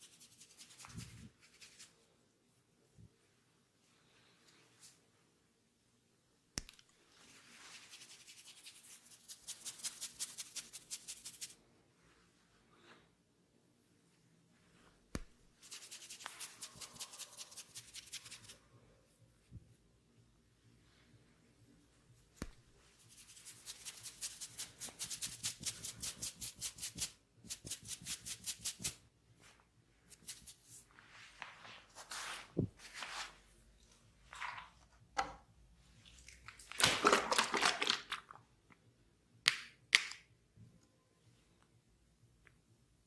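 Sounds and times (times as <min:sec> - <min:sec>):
hands rubbing scalp: 0:00.0 - 0:01.9, 0:07.3 - 0:11.6, 0:15.2 - 0:18.6, 0:22.4 - 0:29.0, 0:30.1 - 0:33.4.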